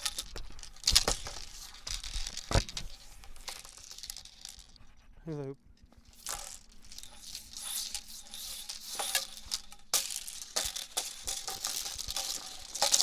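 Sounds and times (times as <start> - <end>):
hula hoop swishing and rattling: 0.0 - 4.8, 6.0 - 13.0.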